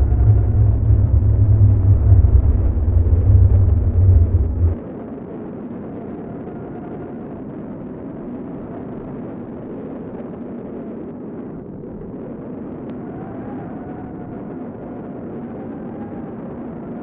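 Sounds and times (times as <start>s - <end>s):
roaring tornado wind: 0.0s - 4.8s.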